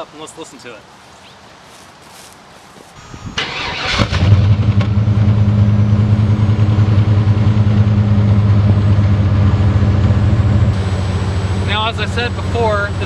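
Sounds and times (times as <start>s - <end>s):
starter motor cranking: 3.4s - 4.4s
engine idling: 3.4s - 13.0s.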